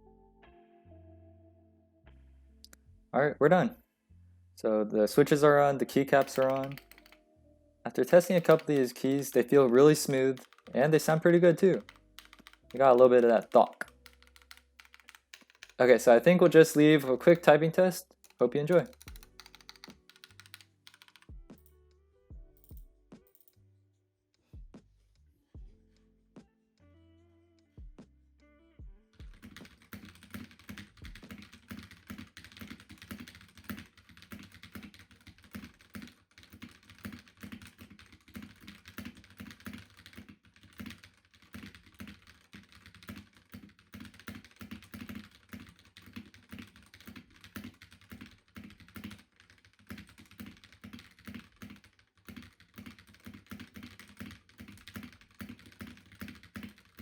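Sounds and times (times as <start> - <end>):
mechanical keyboard typing: 5.3 - 7.2, 8.0 - 17.6, 18.2 - 21.7, 29.2 - 57.0.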